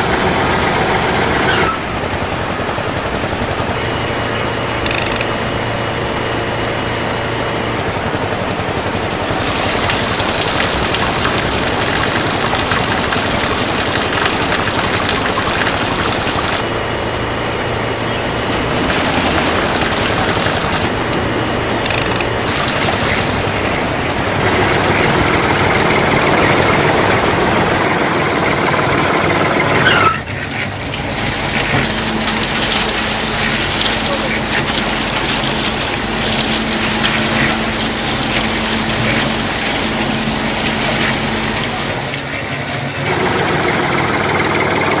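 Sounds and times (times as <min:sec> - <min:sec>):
small model machine motor rattling: 0:04.8 - 0:05.3, 0:21.8 - 0:22.4.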